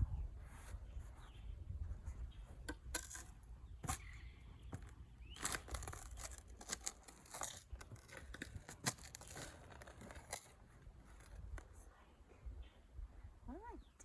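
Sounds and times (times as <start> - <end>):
digging tool scraping gravelly soil: 5.4 - 11.4.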